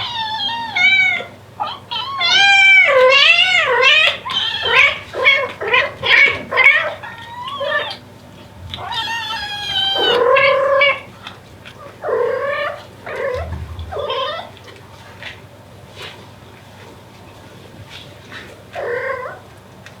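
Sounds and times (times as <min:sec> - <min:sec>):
cat meowing: 0:00.0 - 0:08.0, 0:08.7 - 0:11.1, 0:11.8 - 0:14.6, 0:18.8 - 0:19.4.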